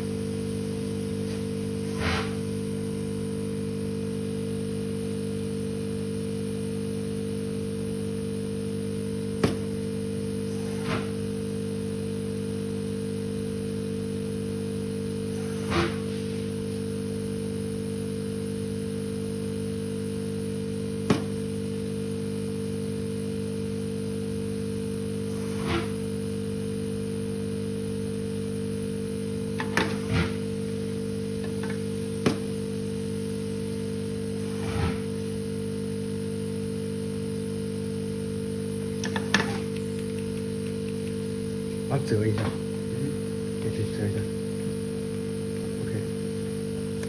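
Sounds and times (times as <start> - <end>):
electrical mains hum: 0.0 - 47.0.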